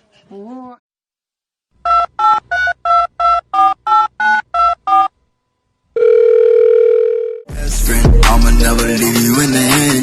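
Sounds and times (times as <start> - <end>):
steady phone tone: 6.0 - 7.5.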